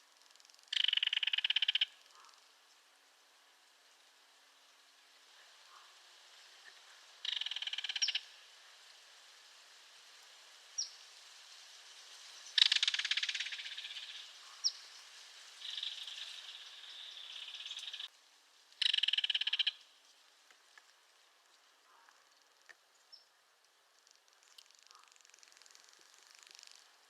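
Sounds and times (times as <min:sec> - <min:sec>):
kingfisher rattle calls: 0:00.7 - 0:02.4, 0:07.2 - 0:08.3, 0:12.6 - 0:14.8, 0:15.6 - 0:18.1, 0:18.8 - 0:19.8.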